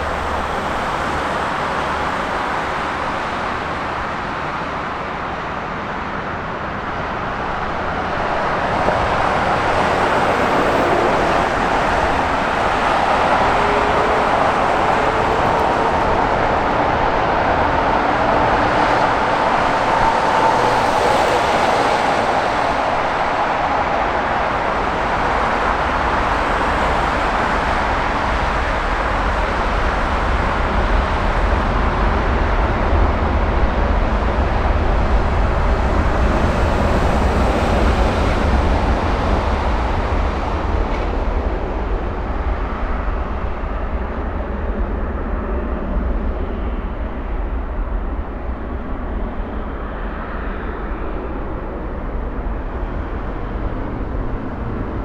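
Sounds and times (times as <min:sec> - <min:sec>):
jet engine roar: 0:00.0 - 0:55.0.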